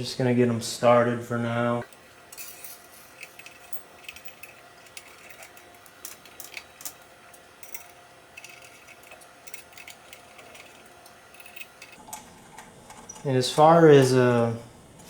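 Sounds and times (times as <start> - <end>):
metallic clicks and scrapes of bolts: 1.8 - 13.3.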